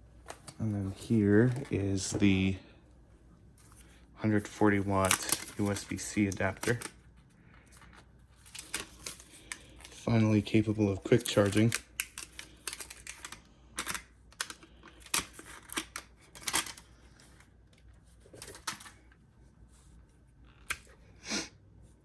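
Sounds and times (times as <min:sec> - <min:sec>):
packaging clicks and rustles: 0:03.8 - 0:19.2.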